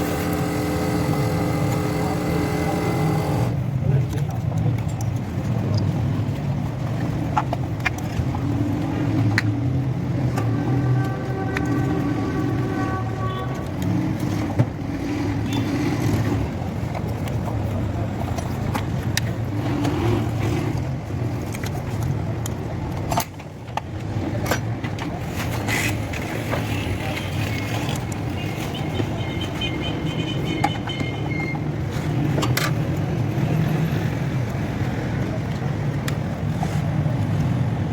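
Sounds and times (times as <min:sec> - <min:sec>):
car engine drone: 0:00.0 - 0:04.0.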